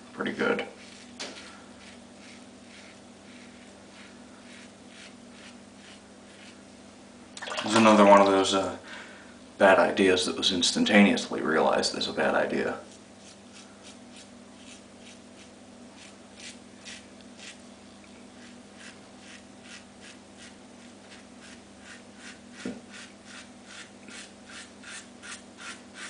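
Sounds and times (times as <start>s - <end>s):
razor scraping stubble: 0.7s - 6.6s, 12.6s - 17.6s, 18.4s - 26.0s.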